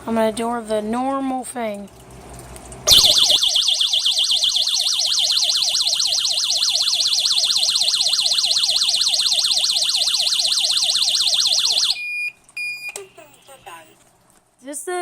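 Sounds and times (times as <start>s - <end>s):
shrill electronic alarm siren: 2.9s - 12.2s.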